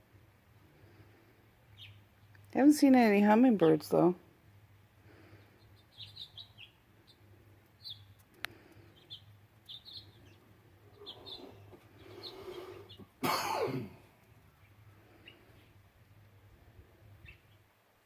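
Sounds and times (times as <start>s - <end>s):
small birds chirping: 0.6s - 17.8s.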